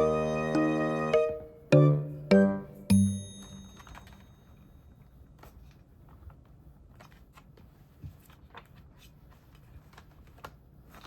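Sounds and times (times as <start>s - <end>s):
plucked music note: 0.0s - 3.8s.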